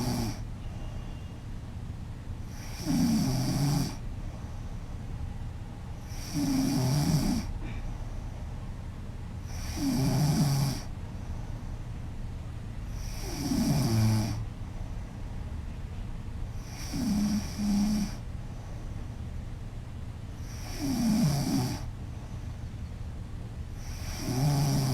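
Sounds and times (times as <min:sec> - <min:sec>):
woman snoring: 0:00.0 - 0:00.4, 0:02.5 - 0:04.0, 0:06.1 - 0:07.5, 0:09.5 - 0:10.9, 0:12.9 - 0:14.4, 0:16.6 - 0:18.2, 0:20.4 - 0:21.9, 0:23.8 - 0:24.9.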